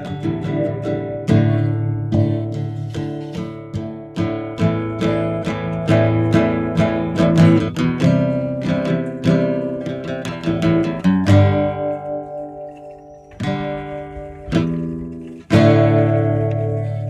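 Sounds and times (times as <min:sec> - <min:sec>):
acoustic guitar strumming chords: 0:00.0 - 0:17.0.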